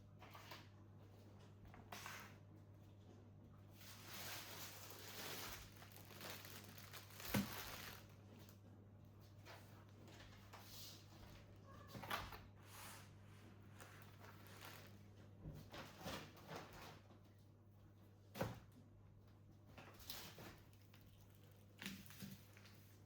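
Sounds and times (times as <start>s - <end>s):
knocks and rustles of handling: 3.8s - 8.6s, 13.5s - 17.4s.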